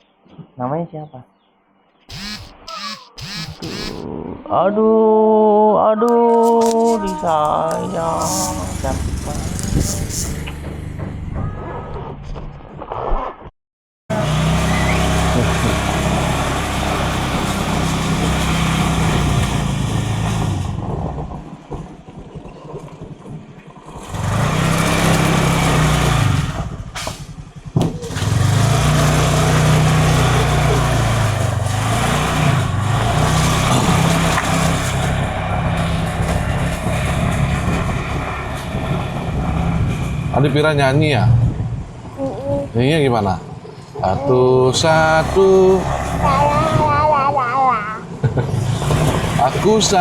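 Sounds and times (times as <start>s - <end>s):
vehicle engine revving: 2.1s - 4.1s, 6.4s - 12.2s, 14.1s - 21.6s, 23.8s - 42.2s, 44.3s - 50.0s
road and wind noise: 6.1s - 13.0s, 14.1s - 50.0s.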